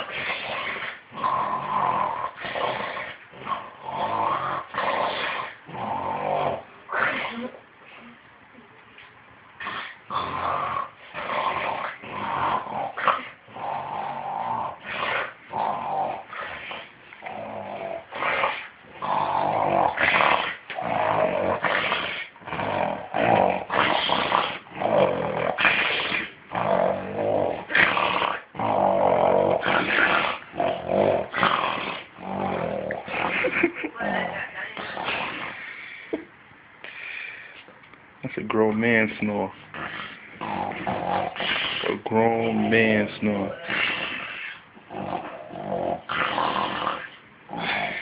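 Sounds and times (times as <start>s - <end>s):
man snoring loudly: 10.1s - 16.7s, 17.3s - 33.4s, 44.9s - 48.0s.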